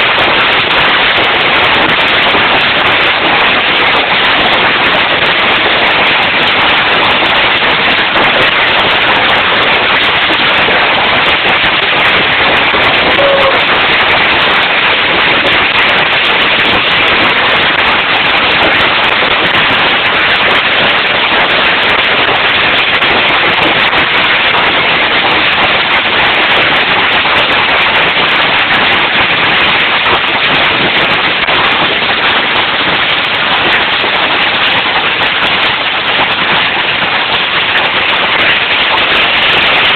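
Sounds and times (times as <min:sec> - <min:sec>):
hail and rain pelting down: 0:00.0 - 0:39.9.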